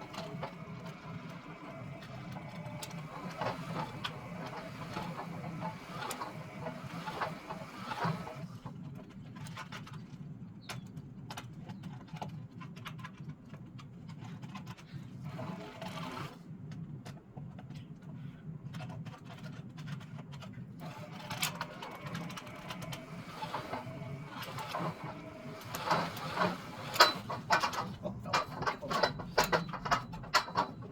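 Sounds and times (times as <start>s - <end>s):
wire clicking on turning spool: 20.8s - 30.9s.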